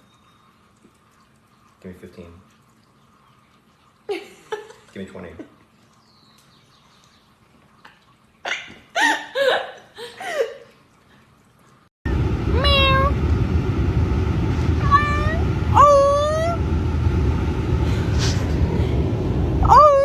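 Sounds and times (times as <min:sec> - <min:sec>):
loud steady low rumble: 0:12.1 - 0:20.0
cat meowing: 0:12.6 - 0:13.2.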